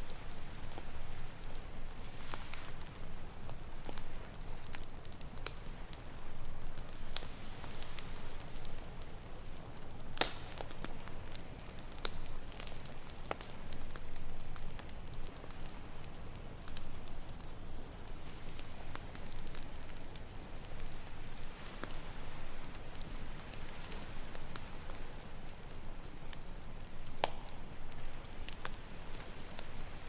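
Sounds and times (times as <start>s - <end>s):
campfire crackling and popping: 0.0s - 30.0s.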